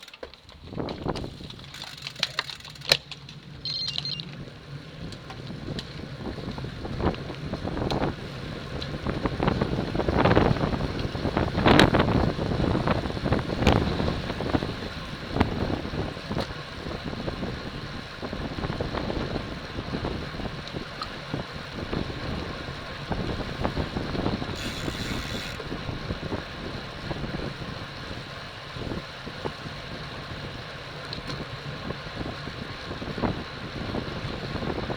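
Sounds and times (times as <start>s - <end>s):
sharp clicks: 1.7s - 4.3s, 24.6s - 25.6s
wind buffeting microphone: 3.2s - 34.9s.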